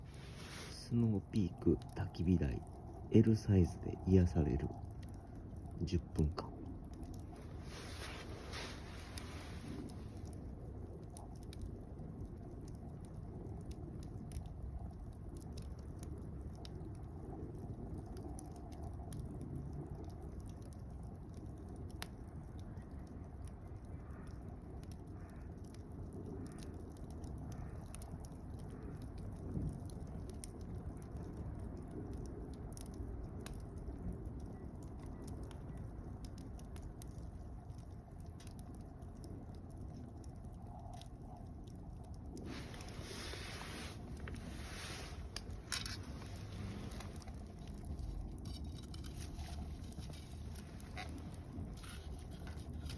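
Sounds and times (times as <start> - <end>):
fire hissing: 0.0 - 11.7, 42.0 - 52.9
fire crackling and popping: 0.0 - 52.9
rush of flames: 0.0 - 52.9.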